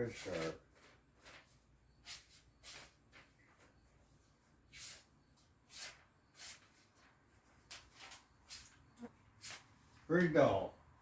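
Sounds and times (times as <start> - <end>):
knife scraping paper: 1.3 - 3.3, 4.7 - 6.9.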